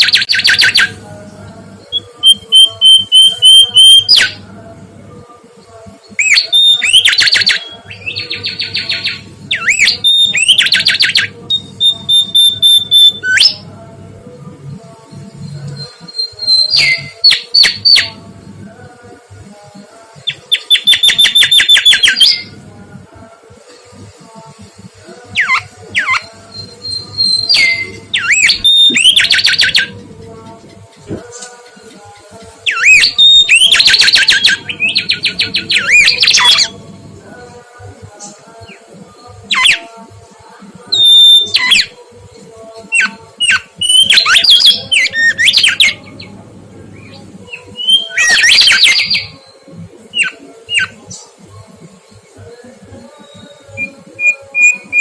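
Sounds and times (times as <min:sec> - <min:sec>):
bird whistling song: 0:01.9 - 0:04.4, 0:06.2 - 0:13.6, 0:20.3 - 0:22.5, 0:25.4 - 0:30.0, 0:32.6 - 0:36.8, 0:40.9 - 0:42.0, 0:43.0 - 0:46.1, 0:47.0 - 0:51.0, 0:53.2 - 0:55.0.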